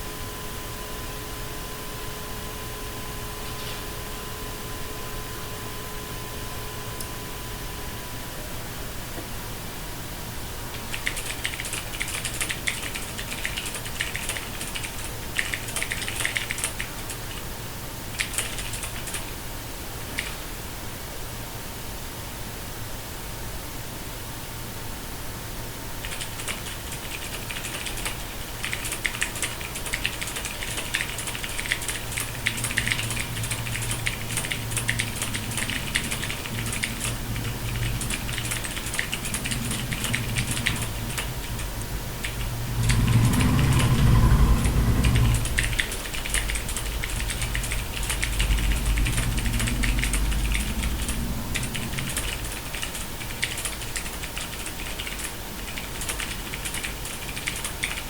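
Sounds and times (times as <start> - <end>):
fast typing on mechanical keyboard: 10.8 - 17.4, 18.1 - 19.4, 20.1 - 20.4, 26.0 - 58.0
low rumble: 31.1 - 54.2.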